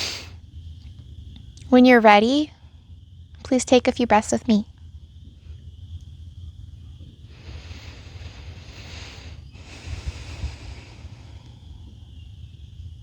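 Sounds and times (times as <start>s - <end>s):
deep breathing: 0.0s - 0.4s, 7.2s - 12.2s
wind rumble on microphone: 5.0s - 13.0s.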